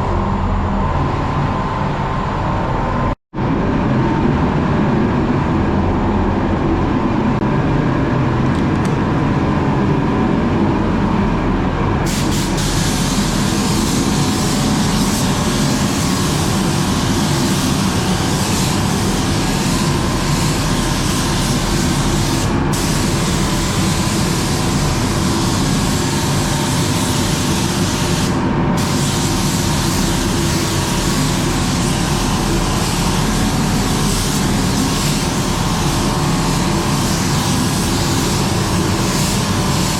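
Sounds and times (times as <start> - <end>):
low mechanical rumble: 0.0 - 39.9
paint spray gun hissing: 12.1 - 39.9.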